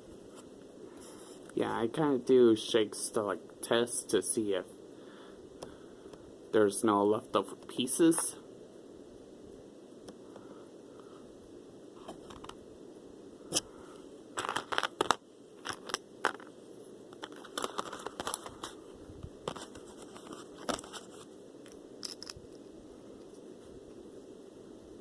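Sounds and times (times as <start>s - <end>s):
plastic packaging crinkling and tearing: 14.4s - 16.5s, 17.2s - 18.8s, 19.5s - 21.3s
sharp clicks and crackles: 14.4s - 18.8s, 19.4s - 22.6s.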